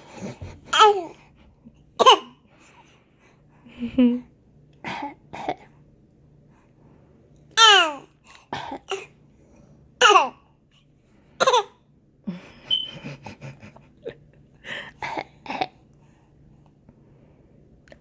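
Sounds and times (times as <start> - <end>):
baby fake coughing: 0.7 - 1.1, 2.0 - 2.4, 7.6 - 9.1, 10.0 - 10.4, 11.4 - 11.8.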